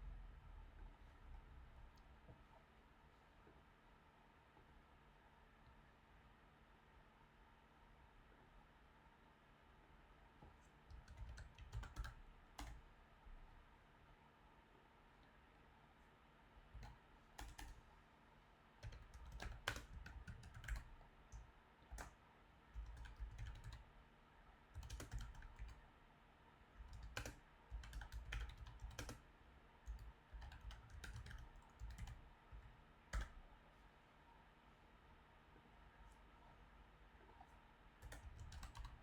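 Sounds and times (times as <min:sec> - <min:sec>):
keyboard typing: 0:10.9 - 0:12.8, 0:16.8 - 0:17.9, 0:18.8 - 0:22.2, 0:22.8 - 0:23.9, 0:24.8 - 0:25.8, 0:26.8 - 0:29.3, 0:29.9 - 0:33.4, 0:38.0 - 0:39.0.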